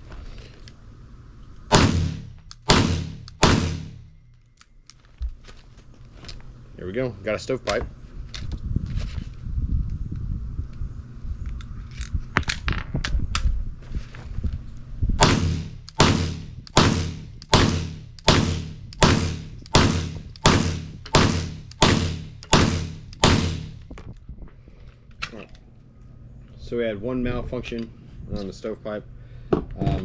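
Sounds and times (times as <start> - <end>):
pistol shots with ringing tail: 1.7 - 4.2, 15.2 - 23.9.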